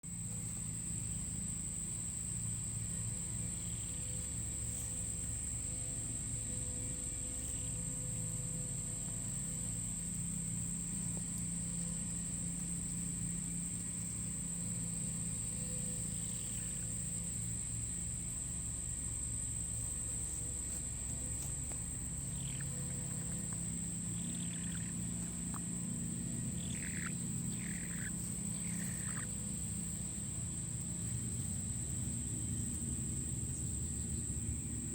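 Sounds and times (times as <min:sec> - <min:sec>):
low hum: 0:00.1 - 0:34.9
chicken peeping softly: 0:20.0 - 0:29.8.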